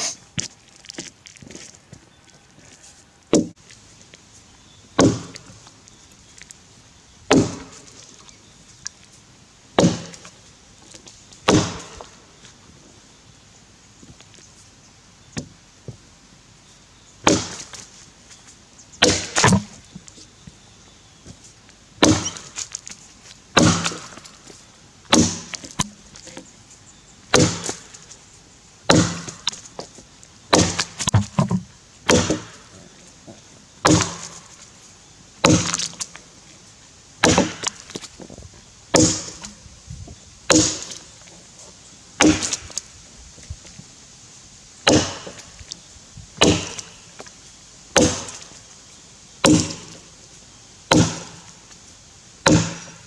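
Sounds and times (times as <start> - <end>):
axe chopping log: 3.3 - 3.6, 5.0 - 5.6, 7.3 - 8.0, 9.8 - 10.3, 11.5 - 12.2, 17.2 - 17.9, 19.0 - 19.8, 22.0 - 22.7, 23.6 - 24.3, 25.1 - 26.1, 27.3 - 28.0, 28.9 - 29.6, 30.5 - 32.7, 33.8 - 34.5, 35.4 - 36.1, 37.2 - 38.0, 39.0 - 39.6, 40.5 - 41.1, 42.2 - 42.8, 44.9 - 45.6, 46.4 - 47.0, 48.0 - 48.6, 49.4 - 50.1, 50.9 - 51.5, 52.4 - 53.0.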